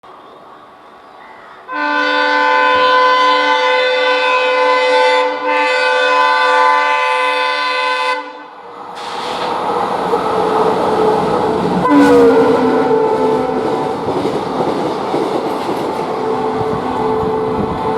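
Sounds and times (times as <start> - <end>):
train engine and wheel noise: 0.0 - 17.9
locomotive air horn: 1.7 - 8.6, 11.8 - 13.6.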